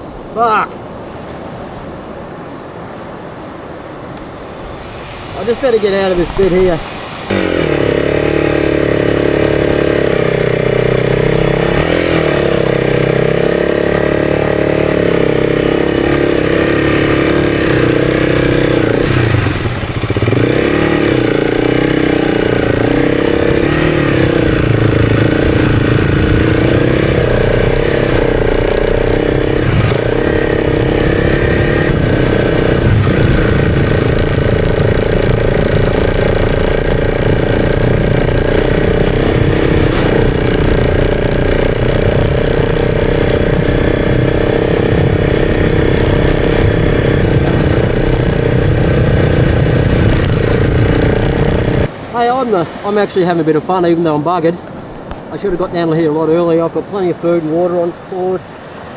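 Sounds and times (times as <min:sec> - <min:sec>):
motorcycle engine under load: 0:06.2 - 0:53.0.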